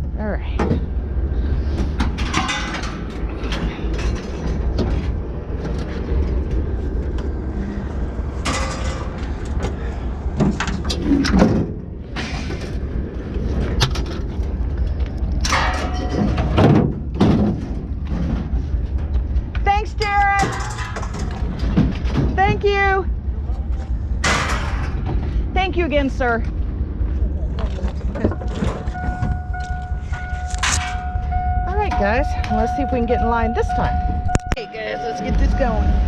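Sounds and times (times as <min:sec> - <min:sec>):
scrap metal clanking: 0:08.4 - 0:12.8, 0:23.7 - 0:25.4
vehicle engine running: 0:11.6 - 0:36.0.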